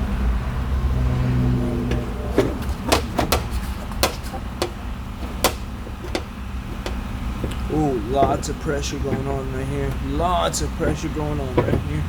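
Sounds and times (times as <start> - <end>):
low hum: 0.0 - 12.0.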